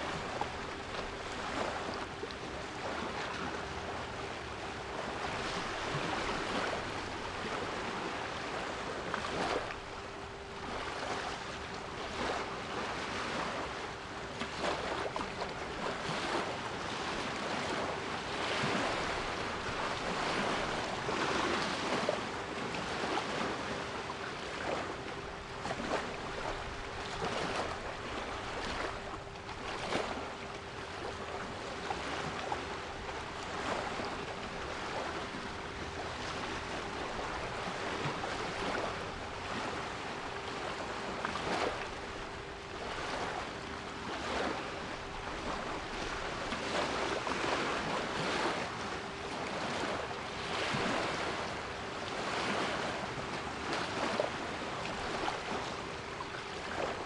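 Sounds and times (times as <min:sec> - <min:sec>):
sea waves washing in: 0:00.0 - 0:57.0.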